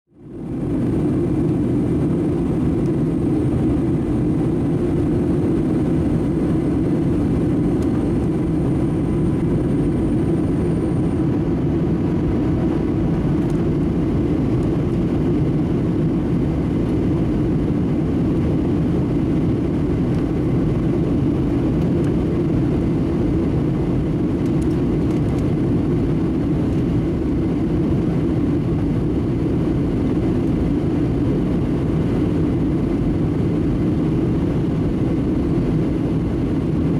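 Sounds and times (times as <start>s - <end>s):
airliner cabin engine rumble: 0.1s - 36.9s
faint high whine: 0.2s - 12.3s.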